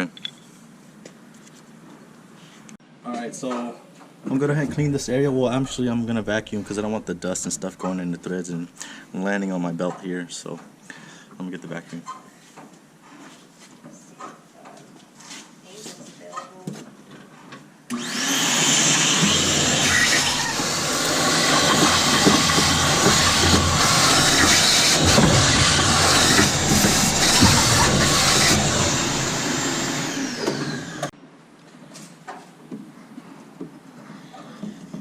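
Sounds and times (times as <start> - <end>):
vacuum cleaner running: 17.9 - 31.1.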